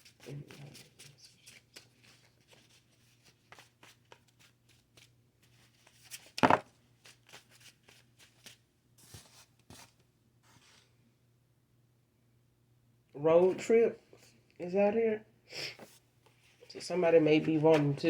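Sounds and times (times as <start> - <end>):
cards shuffling: 0.1 - 10.0, 17.4 - 18.0.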